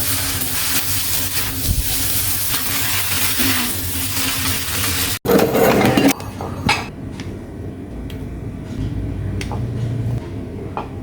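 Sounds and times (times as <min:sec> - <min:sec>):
utensils clinking against dishes: 0:02.6 - 0:06.9.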